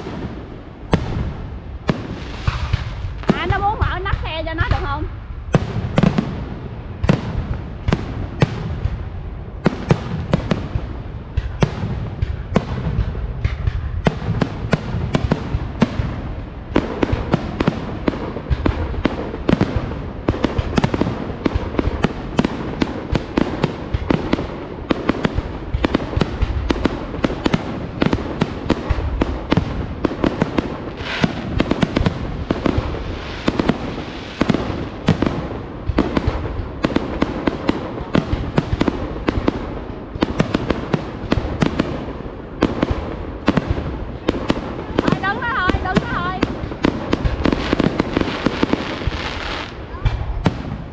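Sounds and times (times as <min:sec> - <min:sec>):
low rumble: 0:00.0 - 0:20.3
fireworks bangs and crackles: 0:00.0 - 0:50.9.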